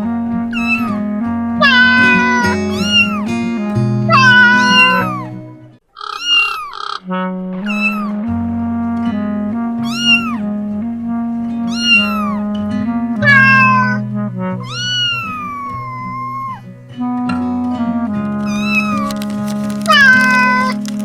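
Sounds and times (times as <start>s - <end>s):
cat meowing: 1.6s - 2.4s, 13.2s - 14.0s.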